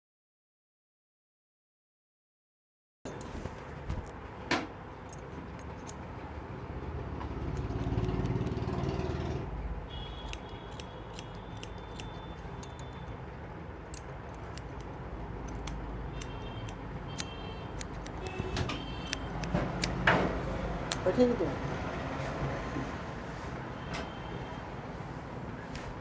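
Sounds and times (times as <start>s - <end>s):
metallic clicking and jingling: 5.1s - 6.0s, 10.3s - 13.2s, 13.9s - 20.0s.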